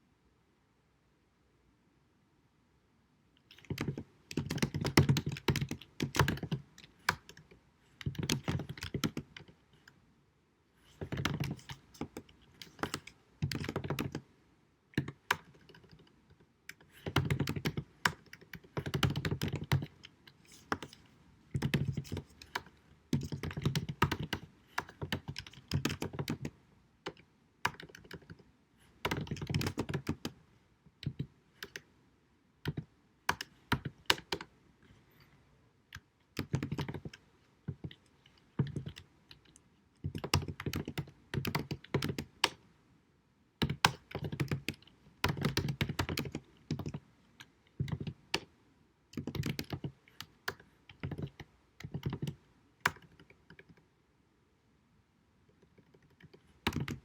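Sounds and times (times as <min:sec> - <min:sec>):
typing on computer keyboard: 0:03.5 - 0:09.6, 0:10.9 - 0:14.2, 0:15.0 - 0:16.1, 0:16.7 - 0:30.4, 0:31.0 - 0:31.9, 0:32.6 - 0:34.5, 0:35.9 - 0:42.6, 0:43.6 - 0:48.5, 0:49.1 - 0:53.8, 0:55.7 - 0:57.0.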